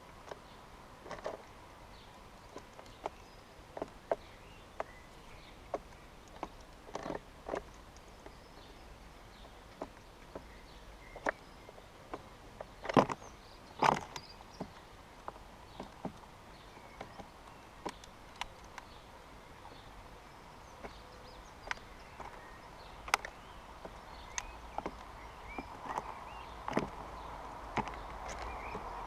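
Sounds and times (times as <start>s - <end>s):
birds tapping on bird table: 20.8s - 29.0s.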